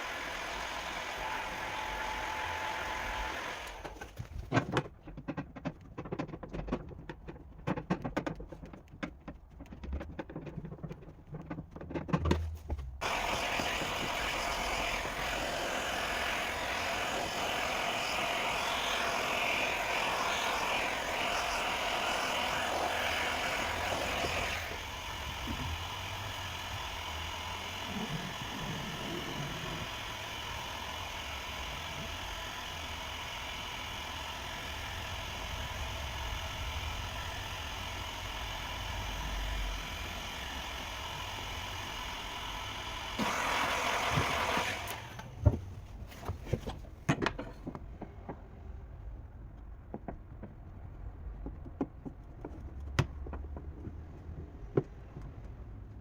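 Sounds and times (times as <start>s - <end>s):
steady mechanical noise: 10.2s - 48.4s
sharp knocks and taps: 49.9s - 50.6s.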